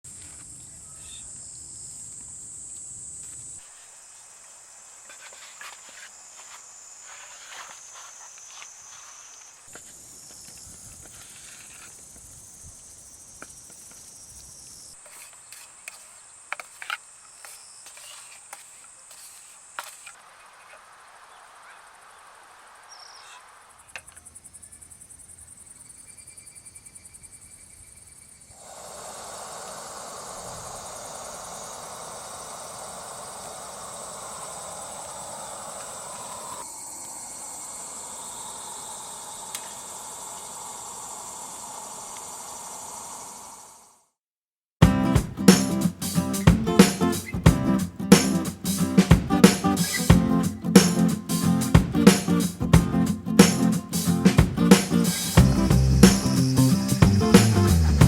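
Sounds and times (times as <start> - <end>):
insects chirring: 0.1 - 44.1, 44.9 - 58.0
loud even hiss: 28.5 - 44.1, 44.8 - 58.0.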